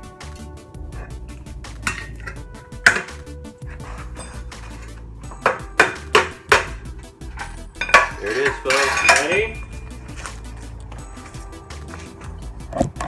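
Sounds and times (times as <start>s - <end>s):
metal tools clanking on metal: 1.9s - 3.1s, 4.2s - 4.7s, 5.4s - 10.0s.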